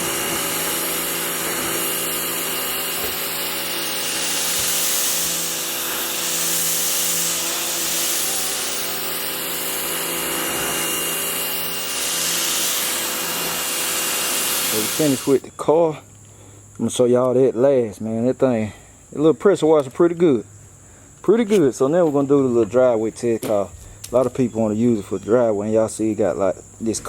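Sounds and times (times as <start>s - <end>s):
pressure washer motor humming: 0.0s - 15.4s
water jet hissing: 0.0s - 15.4s.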